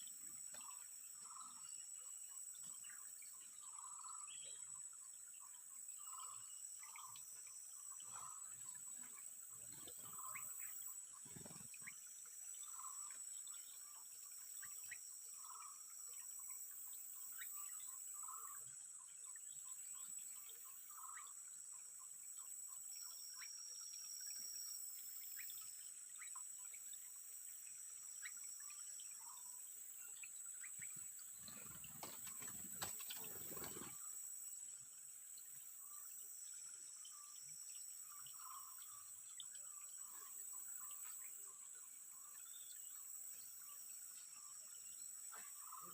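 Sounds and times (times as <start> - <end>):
small scattered chirps: 30.7 - 34.0.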